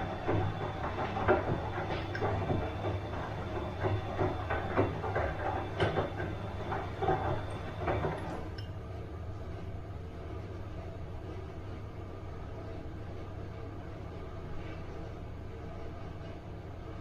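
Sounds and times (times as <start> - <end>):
water sloshing in drum: 0.0 - 8.8
washing machine motor hum: 0.0 - 17.0.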